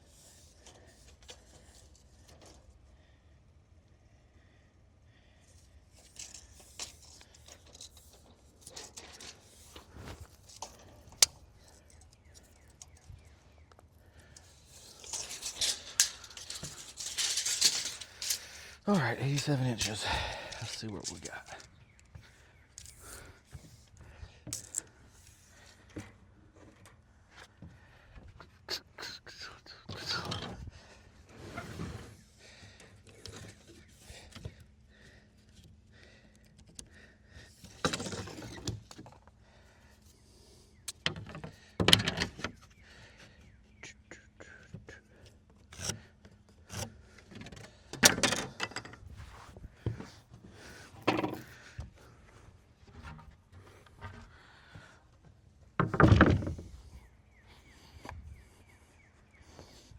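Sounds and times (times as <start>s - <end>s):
wooden thunks and scrapes: 30.0s - 32.3s, 37.6s - 39.2s, 46.7s - 52.2s, 55.8s - 57.0s.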